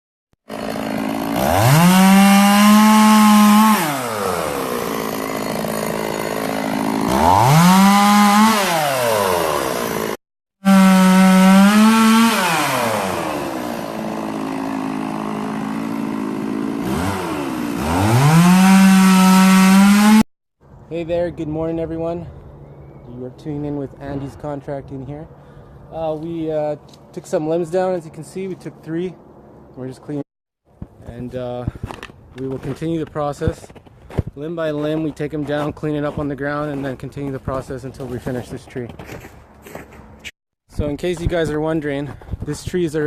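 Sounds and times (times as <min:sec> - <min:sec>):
chainsaw revving: 0:00.4 - 0:20.3.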